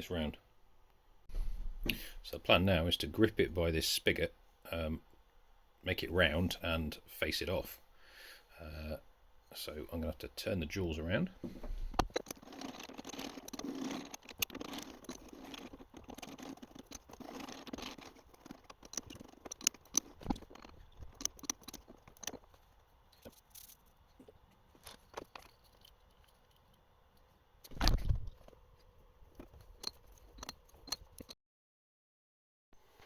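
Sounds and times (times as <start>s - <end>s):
metal clinking and clattering: 11.9s - 26.8s, 29.4s - 31.3s.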